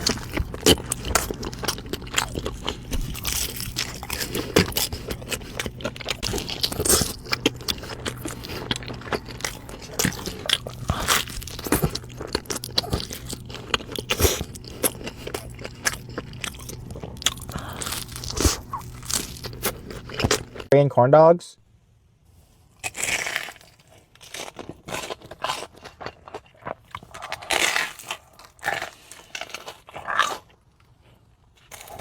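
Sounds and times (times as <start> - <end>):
crunchy chewing: 0.0 - 20.7, 22.5 - 32.0.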